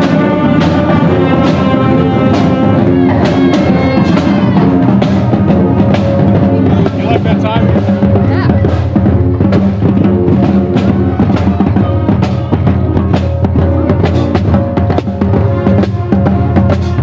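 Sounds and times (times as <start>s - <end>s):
bass drum and snare drum beat: 0.0s - 17.0s
brass sustained notes: 0.0s - 17.0s.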